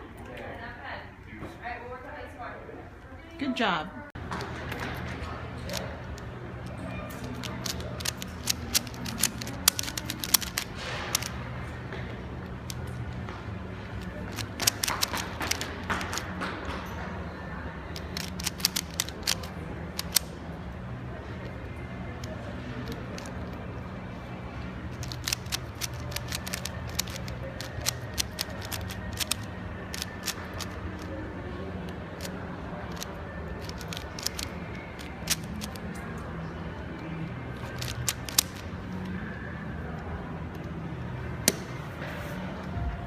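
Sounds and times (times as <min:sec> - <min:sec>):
steady low hum: 0:00.8 - 0:43.0
puzzle cube plastic clicks: 0:07.1 - 0:11.4, 0:14.0 - 0:16.4, 0:17.9 - 0:20.4, 0:22.2 - 0:23.6, 0:24.9 - 0:31.1, 0:32.2 - 0:35.9, 0:37.6 - 0:39.1.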